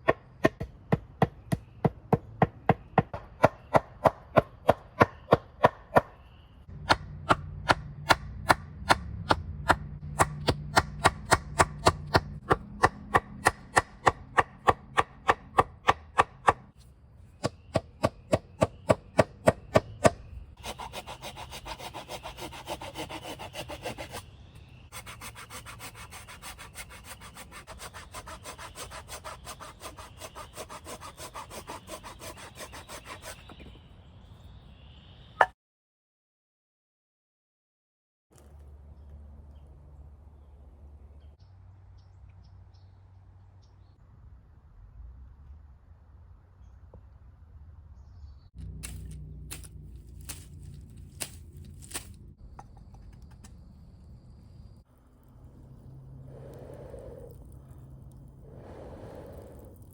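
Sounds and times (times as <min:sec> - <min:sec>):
hand saw cutting log: 0:17.4 - 0:24.3, 0:24.9 - 0:33.6, 0:48.8 - 0:52.1.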